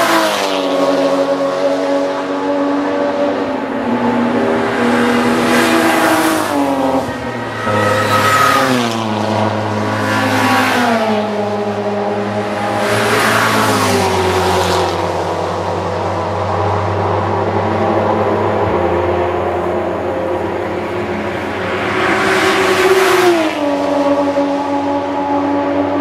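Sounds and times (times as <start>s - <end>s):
race cars passing at speed: 0.0s - 26.0s
low engine drone: 14.0s - 26.0s.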